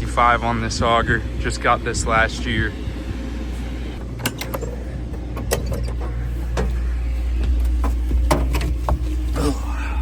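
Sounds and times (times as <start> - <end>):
diesel engine idling: 0.0 - 10.0
sharp clicks and knocks: 4.0 - 6.8, 7.4 - 9.1.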